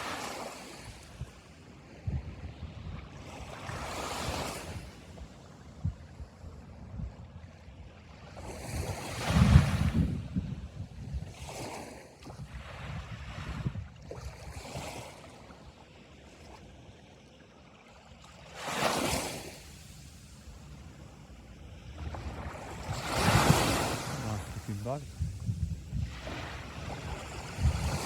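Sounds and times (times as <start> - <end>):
sea waves breaking: 0.0 - 2.0, 3.1 - 5.4, 17.9 - 28.0
wind on microphone: 0.8 - 7.4, 8.3 - 15.0, 20.5 - 28.0.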